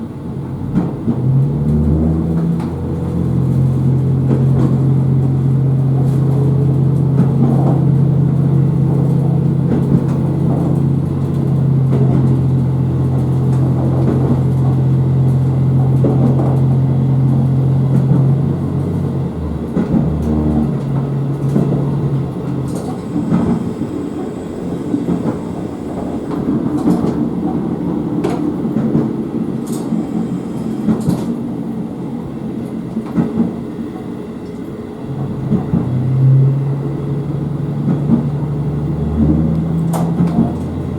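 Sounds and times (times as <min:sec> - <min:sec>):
diesel railcar engine droning: 0:00.0 - 0:40.9.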